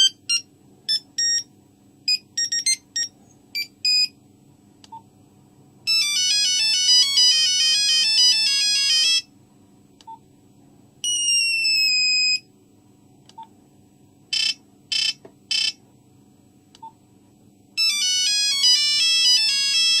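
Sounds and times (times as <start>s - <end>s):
mobile phone ringtone melody: 0.0s - 1.5s, 5.9s - 9.3s, 11.0s - 12.4s, 17.8s - 20.0s.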